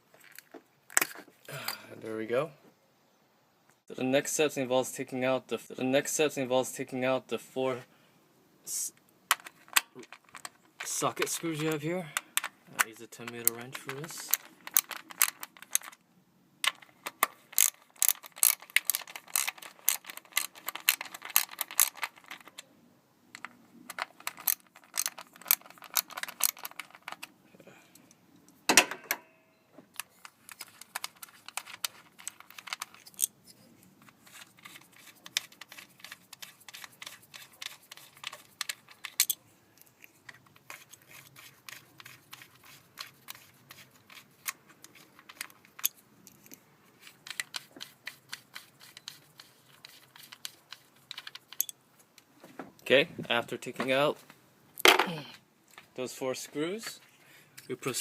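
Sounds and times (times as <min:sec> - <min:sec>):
ratchet wrench clicking: 0:17.6 - 0:22.0
sharp clunk: 0:28.7 - 0:29.4.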